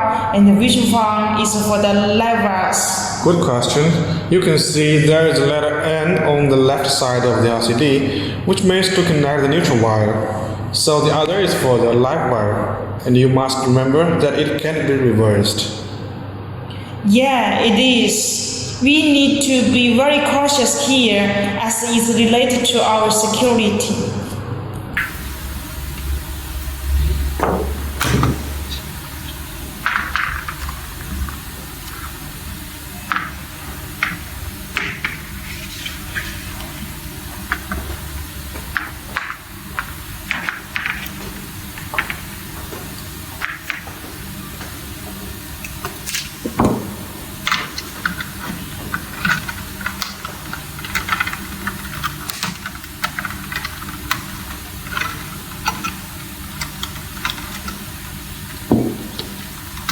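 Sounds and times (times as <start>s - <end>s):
low hum: 24.9s - 39.1s
steady hiss: 25.0s - 59.9s.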